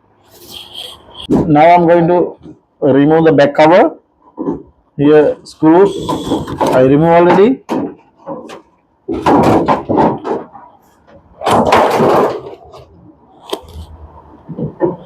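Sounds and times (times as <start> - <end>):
metal panel rattling and scraping: 5.9 - 13.0.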